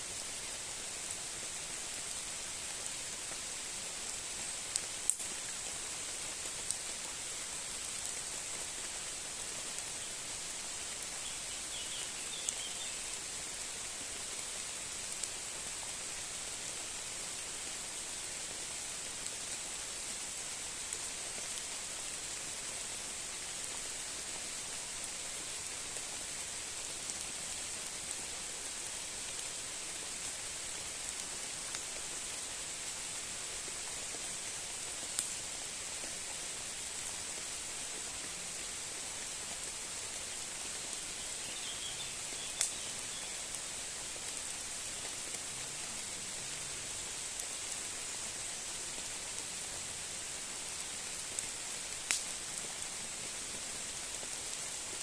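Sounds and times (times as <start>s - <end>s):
steady rain falling: 0.0s - 55.0s
single raindrops ticking: 42.6s - 42.9s, 52.1s - 52.4s.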